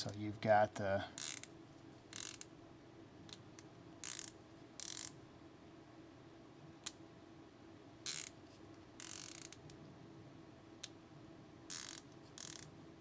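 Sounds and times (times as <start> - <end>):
ratchet clicking: 2.2 - 2.4, 11.7 - 12.6.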